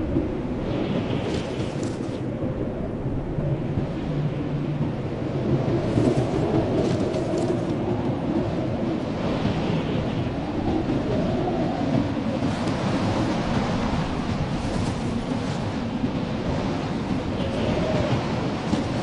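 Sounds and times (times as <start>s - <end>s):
strong blizzard wind: 0.0s - 19.0s.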